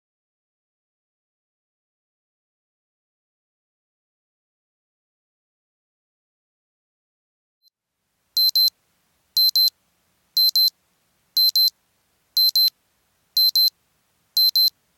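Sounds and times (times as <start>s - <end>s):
timer alarm double beep: 8.4s - 8.7s, 9.4s - 9.7s, 10.4s - 10.7s, 11.4s - 11.7s, 12.4s - 12.7s, 13.4s - 13.7s, 14.4s - 14.7s.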